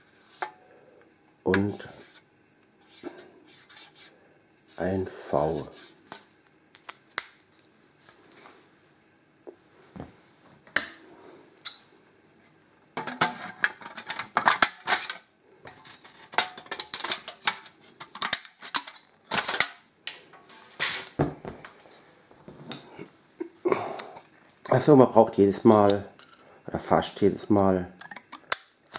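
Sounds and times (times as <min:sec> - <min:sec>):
aluminium sheet clicking and crinkling: 0:13.0 - 0:21.0.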